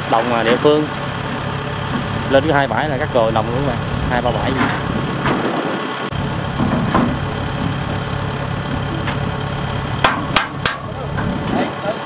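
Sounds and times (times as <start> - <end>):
diesel engine idling: 0.0 - 12.0
sharp metallic clacks: 10.0 - 11.3.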